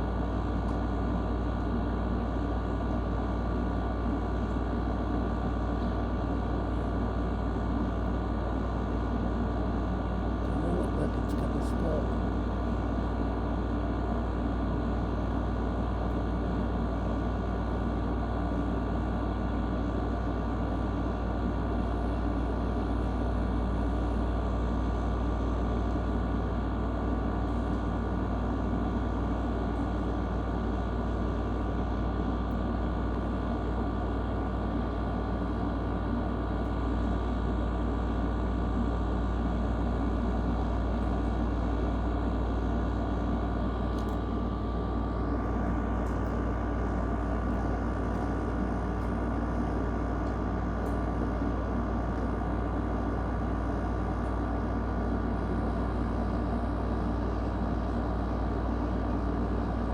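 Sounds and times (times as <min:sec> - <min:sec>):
faint steady hum: 0:00.0 - 0:59.9.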